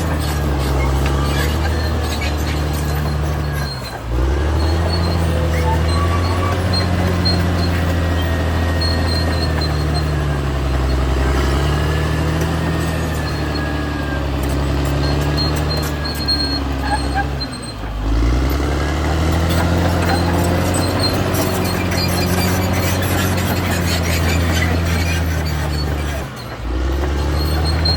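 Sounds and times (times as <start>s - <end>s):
faint high squeal: 0.0s - 17.9s, 19.2s - 27.9s
bulldozer diesel engine running: 0.0s - 27.9s.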